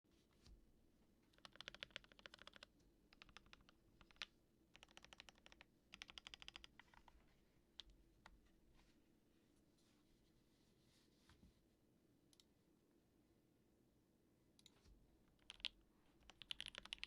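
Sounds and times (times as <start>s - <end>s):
mechanical keyboard typing: 1.4s - 7.1s, 15.3s - 17.0s.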